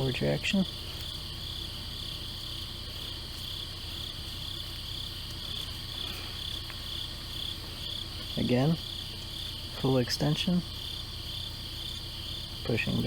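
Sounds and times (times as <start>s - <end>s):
crickets chirping: 0.0s - 13.0s.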